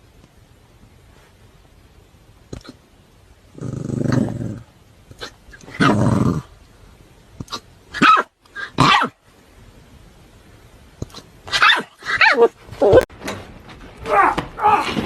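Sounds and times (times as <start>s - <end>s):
puppy growling: 3.5s - 6.6s
puppy barking: 8.0s - 9.2s, 11.5s - 12.6s.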